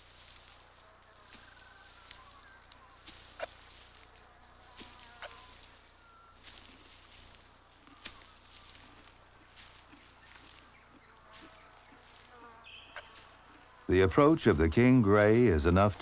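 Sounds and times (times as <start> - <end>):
rustling clicks in dry grass: 0.0 - 13.9
bird chirps: 1.5 - 13.3.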